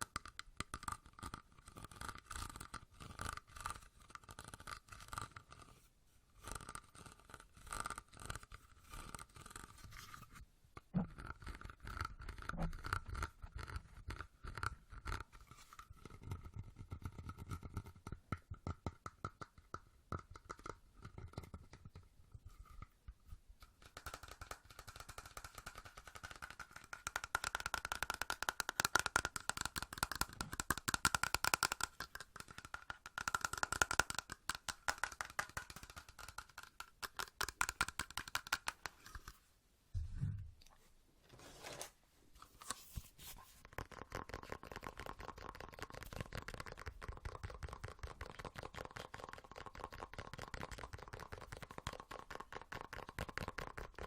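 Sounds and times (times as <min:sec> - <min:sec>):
fast tapping and scratching: 0:10.9 - 0:22.1, 0:23.7 - 0:39.4, 0:43.6 - 0:54.0.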